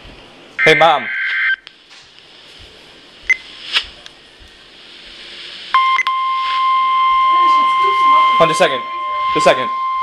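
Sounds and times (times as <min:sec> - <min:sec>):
brief blips: 0:05.8 - 0:10.0
steady high-pitched alert tone: 0:05.8 - 0:10.0.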